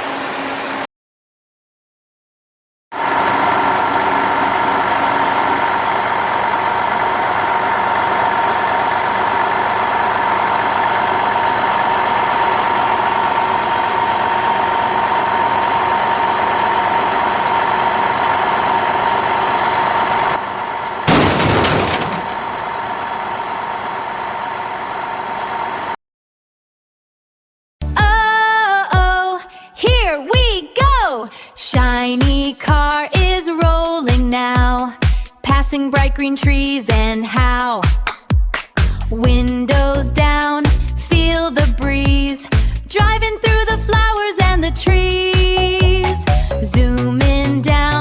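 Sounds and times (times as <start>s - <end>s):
sudden loud burst: 21.1s - 22.7s.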